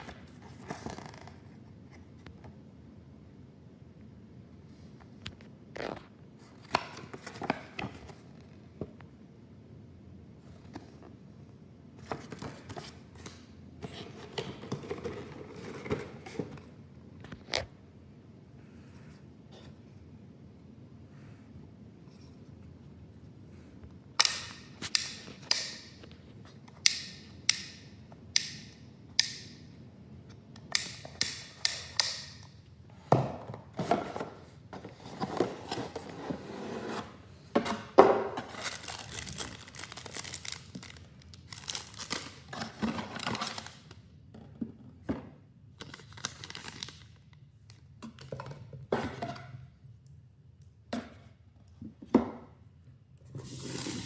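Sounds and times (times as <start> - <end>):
rustling and crinkling: 33.6 - 44.0.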